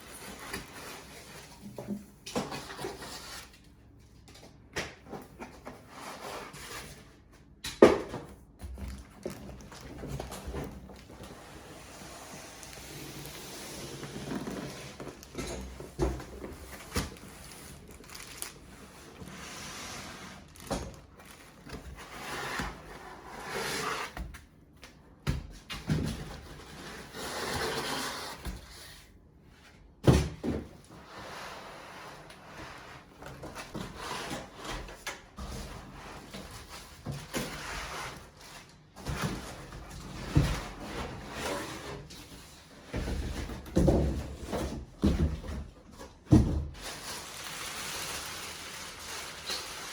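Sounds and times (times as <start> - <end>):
packaging rustling: 12.5 - 19.3, 20.3 - 22.0, 46.8 - 49.9.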